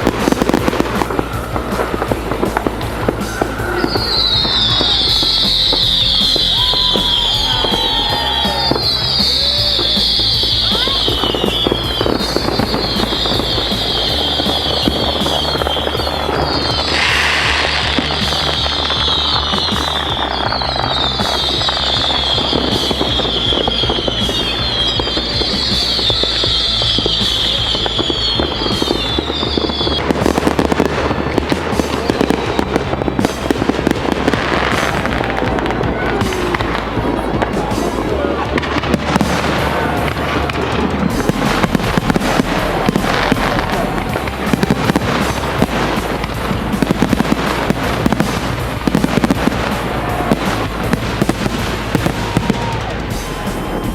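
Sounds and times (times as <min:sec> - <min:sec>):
fireworks crackling and popping: 0:00.0 - 0:53.9
fireworks whistles: 0:00.0 - 0:53.9
music track: 0:00.0 - 0:53.9.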